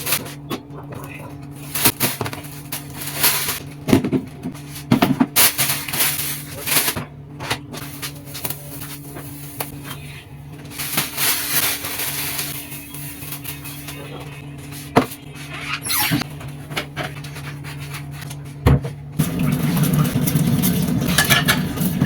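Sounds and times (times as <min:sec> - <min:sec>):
objects knocking and clattering: 0:03.6 - 0:05.4, 0:18.6 - 0:22.0.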